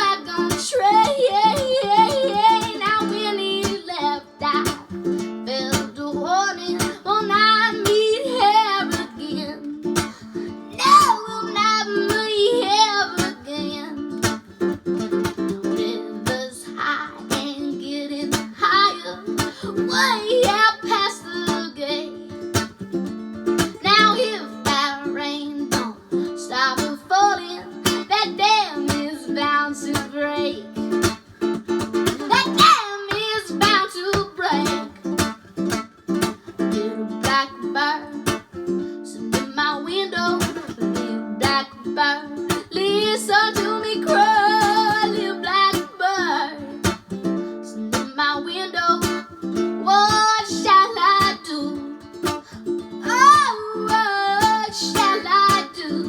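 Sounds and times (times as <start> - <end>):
girl singing with vibrato: 0.0 - 56.0
strummed string instrument: 0.0 - 56.0.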